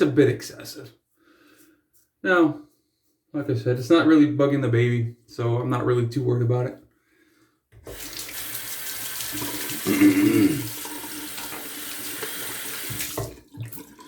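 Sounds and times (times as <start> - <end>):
sink tap running: 7.8 - 14.0
water splashing: 7.8 - 14.0.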